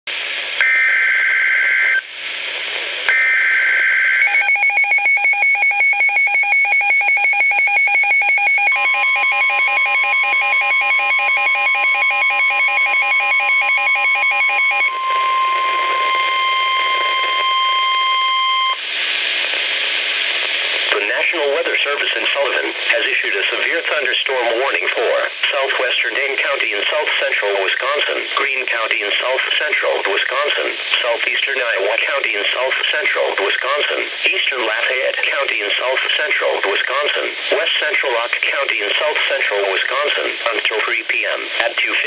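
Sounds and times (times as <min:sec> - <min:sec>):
rapid electronic beeping: 0:04.2 - 0:18.8.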